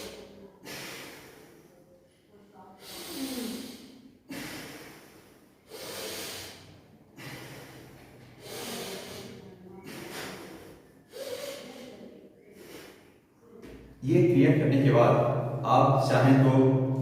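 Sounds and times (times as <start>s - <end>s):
forceful nasal breathing: 0.0s - 1.7s, 2.8s - 13.2s.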